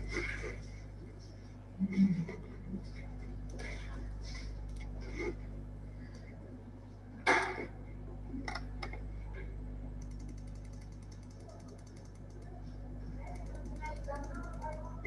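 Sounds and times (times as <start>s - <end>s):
steady low hum: 0.0s - 15.0s
fast small ticks: 10.0s - 12.5s, 13.2s - 15.0s.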